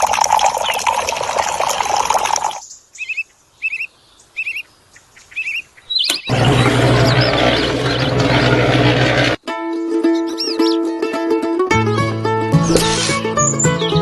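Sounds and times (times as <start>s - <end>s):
running water: 0.0s - 2.6s
songbird chirping: 2.6s - 8.2s, 10.1s - 10.9s.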